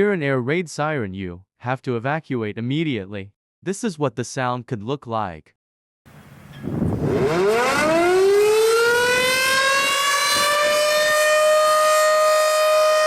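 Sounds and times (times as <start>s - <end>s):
air raid siren: 6.2s - 13.0s.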